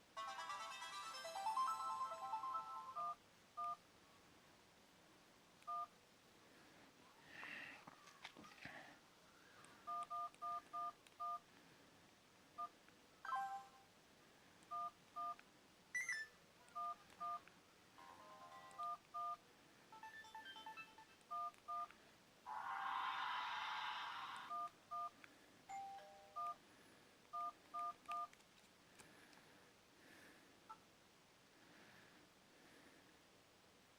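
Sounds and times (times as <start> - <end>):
phone ringtone keypad beeps: 0.2 - 3.8, 9.9 - 11.4, 16.0 - 17.4, 18.5 - 21.9, 24.5 - 25.1, 25.7 - 26.6.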